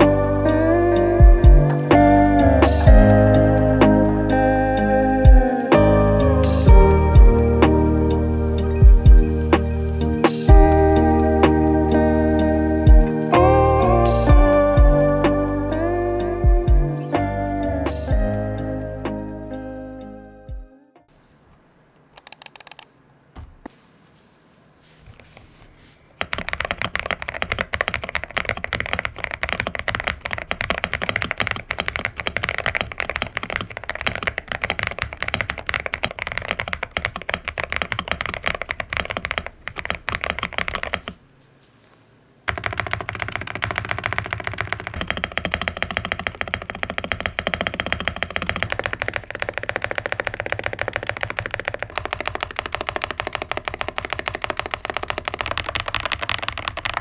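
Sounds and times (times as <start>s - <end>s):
mechanical keyboard typing: 22.2s - 22.9s, 26.2s - 41.2s, 42.5s - 57.0s.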